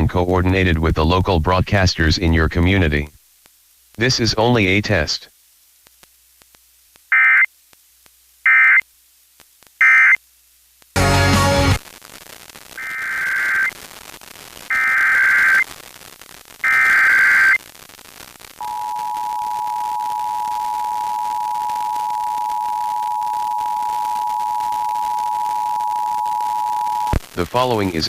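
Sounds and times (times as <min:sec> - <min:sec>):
burst of noise: 0:11.0 - 0:28.0
screeching digital header tones: 0:12.8 - 0:13.7, 0:14.7 - 0:15.6, 0:16.6 - 0:17.6, 0:18.6 - 0:27.2
two-tone attention signal: 0:18.6 - 0:27.1.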